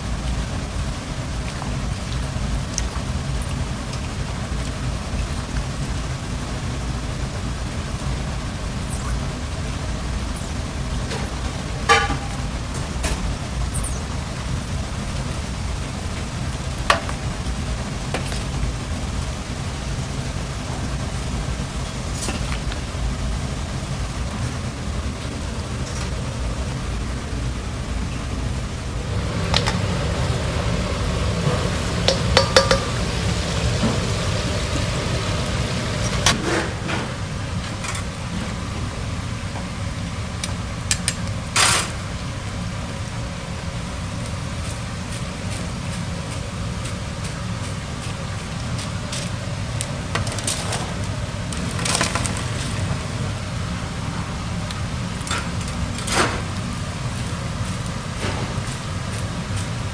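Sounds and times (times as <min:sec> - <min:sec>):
low rumble of kitchen noise: 0:00.0 - 0:59.9
dishes and cutlery clinking: 0:10.4 - 0:14.1, 0:29.2 - 0:38.2.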